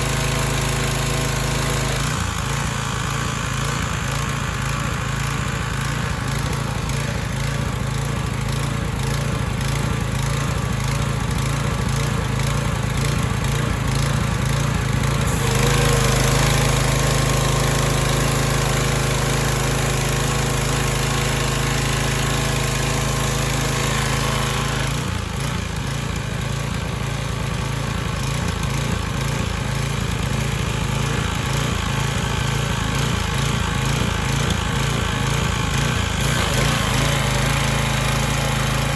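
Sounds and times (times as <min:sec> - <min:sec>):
pressure washer engine running: 0:00.0 - 0:38.9
pressure washer hiss: 0:14.9 - 0:38.9.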